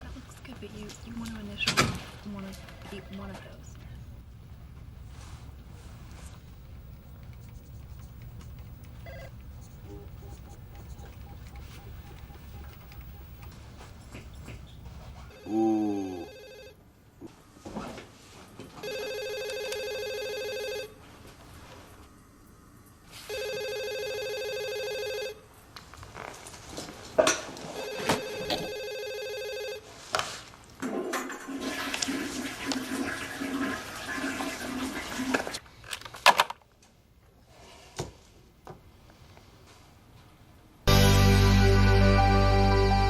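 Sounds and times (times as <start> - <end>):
telephone ringing: 6.4 - 14.1, 15.3 - 16.8, 18.8 - 21.0, 23.2 - 25.4, 27.7 - 30.0
sharp clicks: 6.9 - 14.6.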